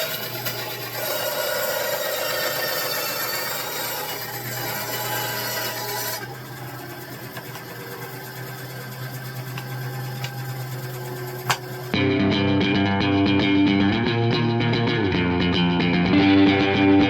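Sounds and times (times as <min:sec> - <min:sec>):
bandsaw motor hum: 0:00.0 - 0:12.0
bandsaw rasping cut: 0:00.0 - 0:12.0.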